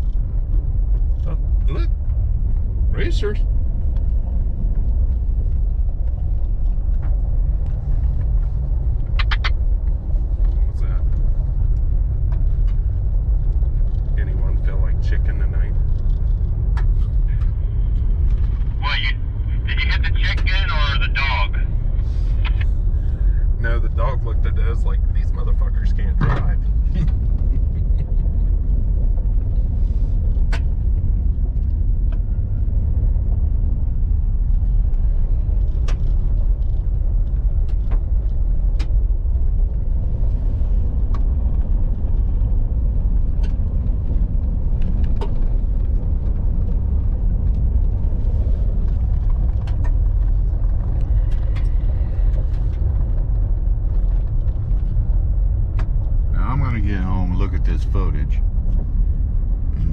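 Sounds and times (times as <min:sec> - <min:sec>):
car engine and tyres rumbling: 0:00.0 - 0:59.9
sharp clicks and knocks: 0:09.0 - 0:10.6, 0:48.9 - 0:54.8.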